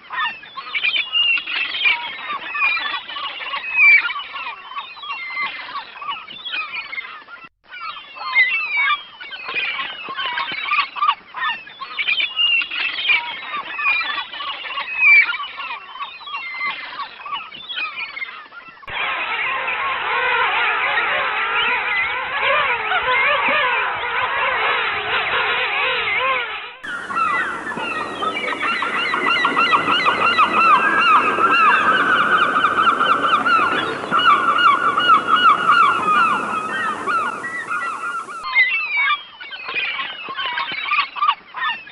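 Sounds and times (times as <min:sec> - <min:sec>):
birds chirping and calling: 0:00.1 - 0:07.1, 0:19.0 - 0:41.9.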